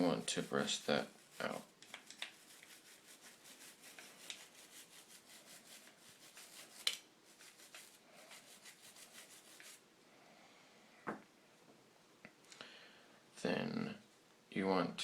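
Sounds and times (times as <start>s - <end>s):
brush scrubbing metal: 0.0s - 9.8s.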